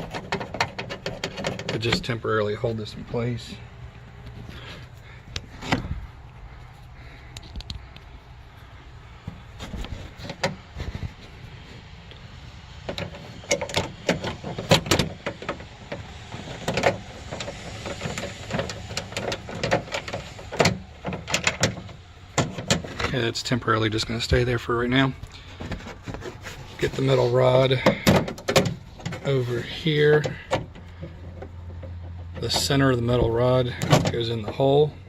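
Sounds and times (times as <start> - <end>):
clicks and metallic knocks: 0.0 - 2.2, 12.8 - 23.3, 25.2 - 34.7.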